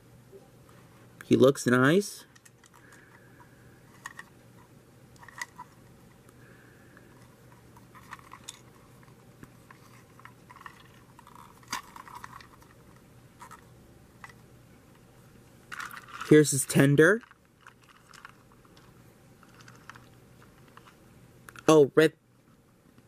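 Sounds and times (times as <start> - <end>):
steady low hum: 0.0 - 23.0
plastic toy train clicks and rattles: 3.9 - 4.3, 5.2 - 5.7, 7.2 - 14.4, 15.7 - 21.7.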